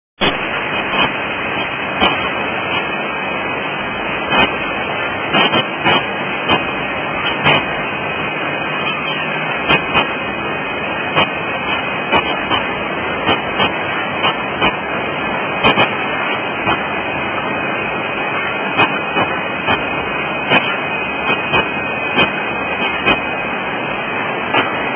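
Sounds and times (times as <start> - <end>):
sharp machine clicks and clacks: 0.9 - 2.9, 5.3 - 7.7, 8.9 - 10.2, 11.1 - 14.8, 15.6 - 16.9, 18.7 - 23.3
packaging machine running: 3.8 - 24.9.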